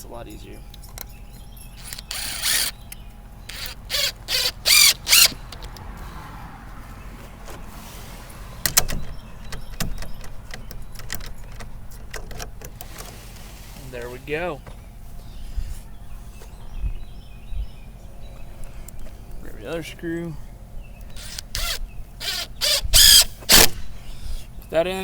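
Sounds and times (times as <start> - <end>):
cordless drill driving screw: 1.8 - 2.9, 3.5 - 5.8, 21.1 - 23.8.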